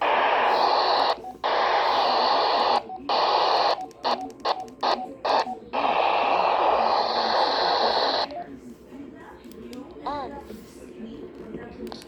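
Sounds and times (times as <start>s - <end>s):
radio static hiss: 0.0s - 8.4s.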